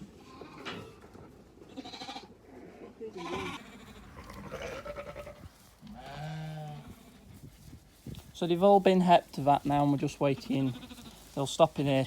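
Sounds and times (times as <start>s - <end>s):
sheep and lambs bleating: 1.7s - 7.4s, 9.8s - 11.8s.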